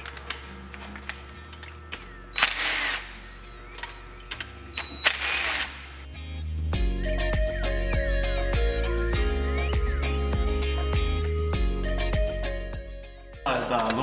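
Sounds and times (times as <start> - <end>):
power tool bursts: 0.0 - 6.1
tool clicks: 0.0 - 6.1, 13.6 - 14.0
music: 0.0 - 14.0.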